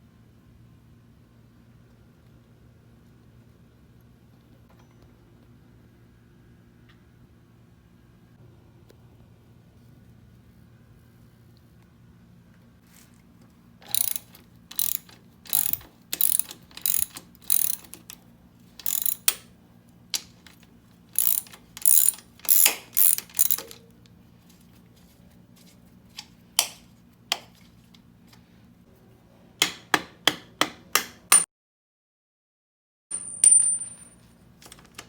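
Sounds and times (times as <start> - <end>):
ratchet wrench clicking: 13.8 - 18.2, 18.8 - 19.5, 20.2 - 23.8.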